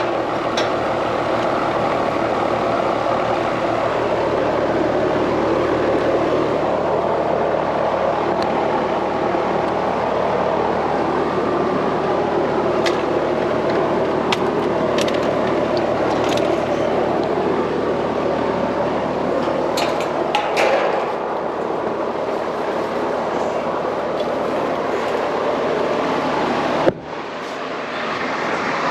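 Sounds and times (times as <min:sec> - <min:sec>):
machine drone with low hum: 0:00.0 - 0:28.9
sharp clicks and ticks: 0:12.8 - 0:16.6.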